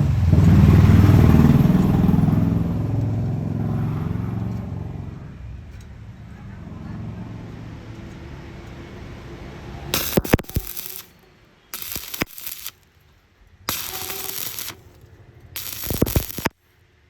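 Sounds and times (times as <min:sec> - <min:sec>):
welding arc crackling and hissing: 0:10.0 - 0:11.1, 0:11.8 - 0:12.9, 0:13.7 - 0:15.0, 0:15.6 - 0:16.6.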